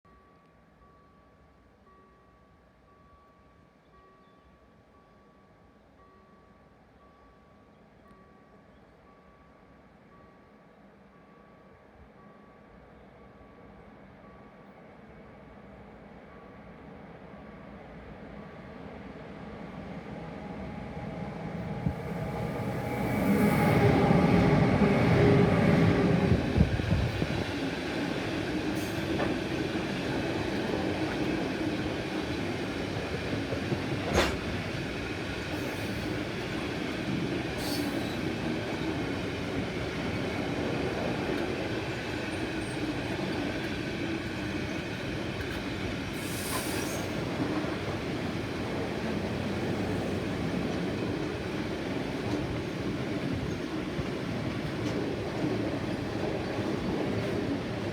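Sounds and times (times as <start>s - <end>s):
freight train wagons rumbling: 20.0s - 57.9s.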